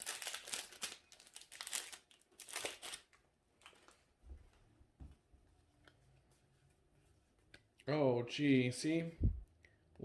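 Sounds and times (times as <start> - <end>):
foil wrapper crinkling: 0.0 - 3.9.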